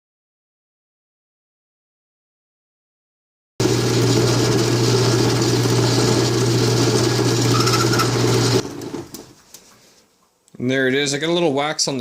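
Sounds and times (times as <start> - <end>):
wood lathe humming: 3.6 - 9.4.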